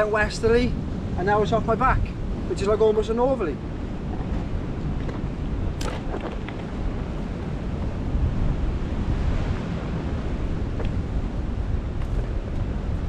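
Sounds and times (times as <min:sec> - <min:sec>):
wind buffeting microphone: 0:00.0 - 0:13.0
sea swell breaking on rocks: 0:03.9 - 0:13.0.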